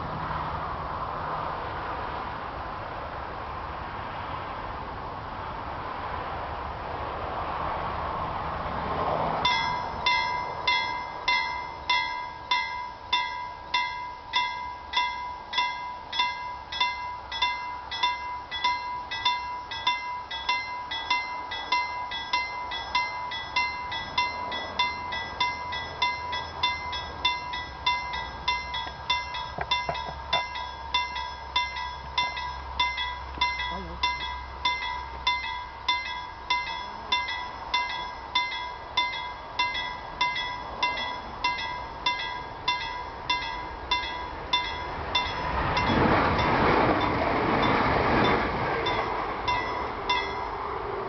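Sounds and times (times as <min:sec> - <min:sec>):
level crossing warning bell: 0:09.4 - 0:51.0.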